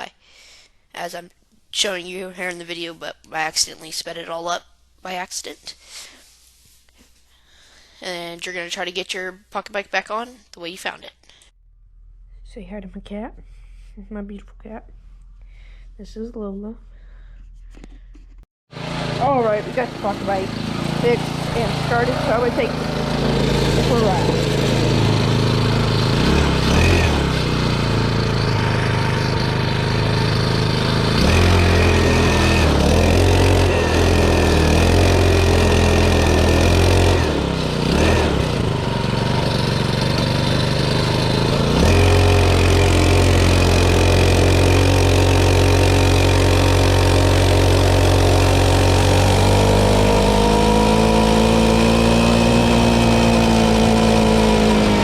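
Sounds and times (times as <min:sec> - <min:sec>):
small engine revving: 0:18.7 - 0:55.0.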